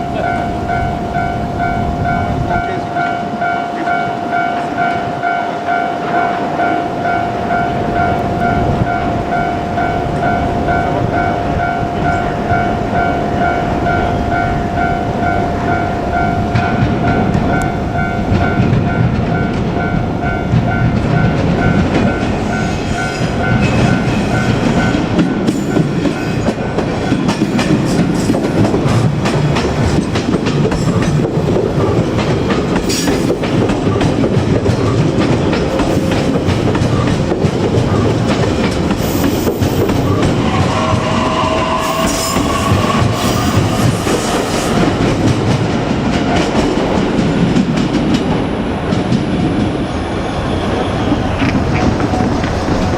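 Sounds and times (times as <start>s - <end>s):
level crossing warning bell: 0.0s - 47.0s
train wheels clacking over rail joints: 12.0s - 49.9s.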